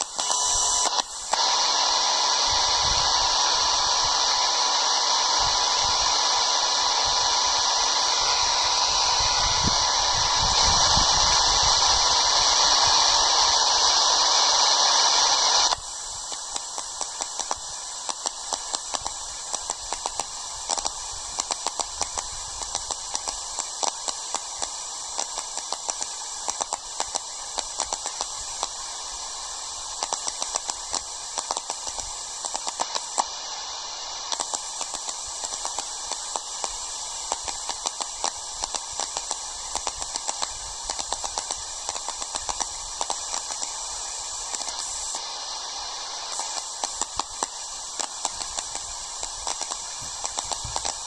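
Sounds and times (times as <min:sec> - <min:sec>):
crackling clicks: 0:00.0 - 0:01.7, 0:15.4 - 0:33.4, 0:34.2 - 0:51.0
radio static hiss: 0:00.0 - 0:51.0.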